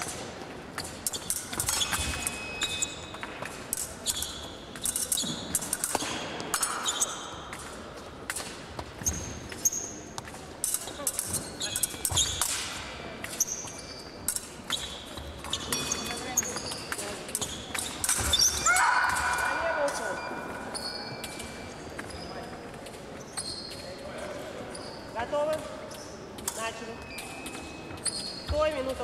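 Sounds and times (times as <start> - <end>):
shoe squeaks: 0.9 - 5.8, 6.7 - 7.4, 9.0 - 10.2, 10.8 - 12.5, 13.3 - 25.2, 26.8 - 29.0.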